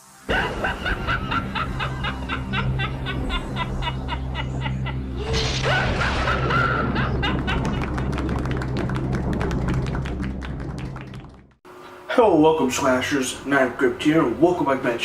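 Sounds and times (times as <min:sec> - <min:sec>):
low drone: 0:00.2 - 0:11.6
rhythmic laugh-like voice: 0:00.3 - 0:08.6
intro music: 0:06.8 - 0:11.6.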